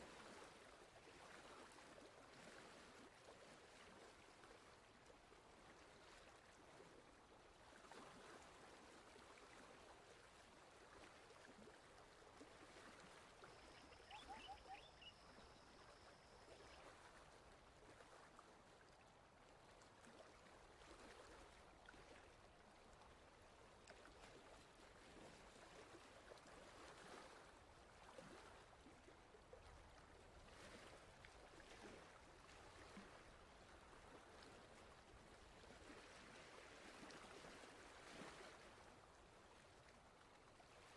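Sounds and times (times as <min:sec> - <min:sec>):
faint steady hiss: 0:12.3 - 0:19.1
tiny chirps: 0:13.7 - 0:16.2.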